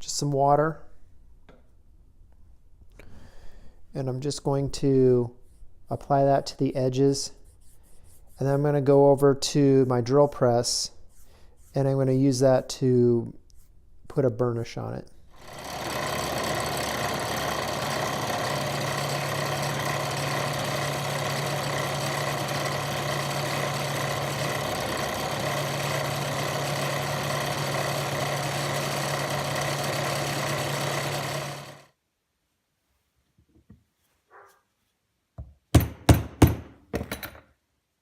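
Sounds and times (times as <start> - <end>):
drill press humming: 15.3 - 31.9.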